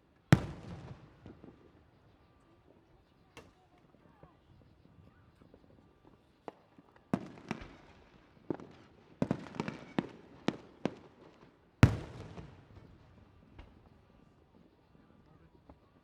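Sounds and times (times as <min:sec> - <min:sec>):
fireworks bangs: 0:00.4 - 0:01.5.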